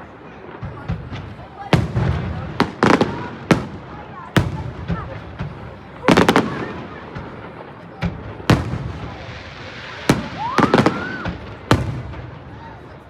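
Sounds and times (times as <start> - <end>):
fireworks bangs with echo: 0.0 - 13.0
rising firework whistle: 9.6 - 11.8.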